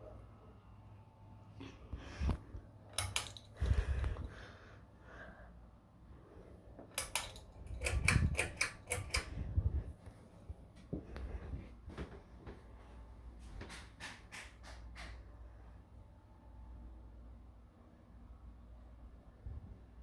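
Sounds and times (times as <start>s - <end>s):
sharp mechanical clicks: 2.9s - 3.7s, 6.9s - 9.4s.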